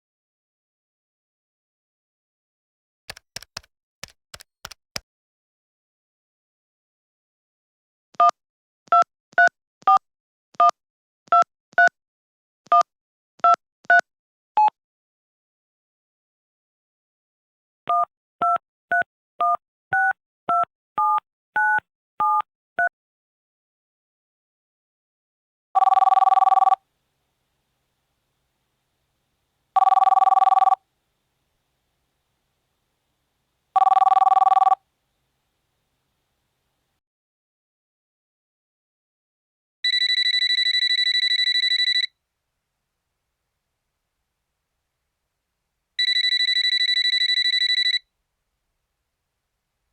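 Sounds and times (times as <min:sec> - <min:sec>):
telephone keypad tones: 0:25.8 - 0:26.8, 0:29.8 - 0:30.8, 0:33.8 - 0:34.8, 0:39.8 - 0:42.1, 0:46.0 - 0:48.0.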